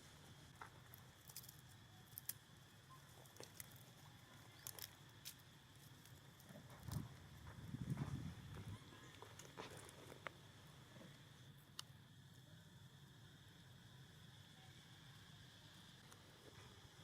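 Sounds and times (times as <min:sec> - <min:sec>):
faint scattered clicks: 0:11.1 - 0:12.0.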